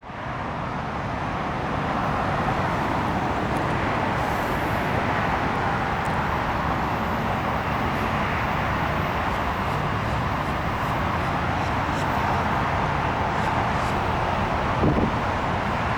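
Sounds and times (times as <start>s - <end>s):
rushing vehicle noise: 0.1s - 15.9s.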